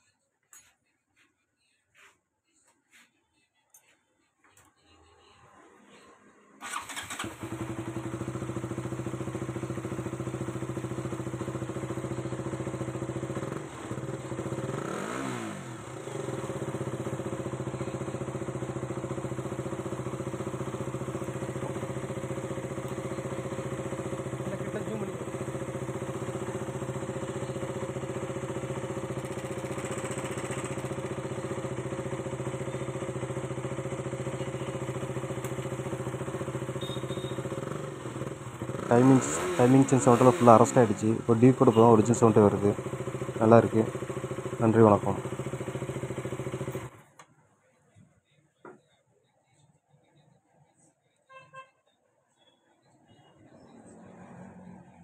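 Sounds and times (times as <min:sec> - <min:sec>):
motorcycle engine starting and idling: 0:06.6 - 0:47.3.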